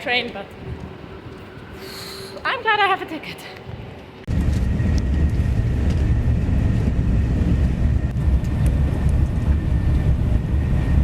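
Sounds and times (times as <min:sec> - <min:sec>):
wind buffeting microphone: 0:03.6 - 0:11.0.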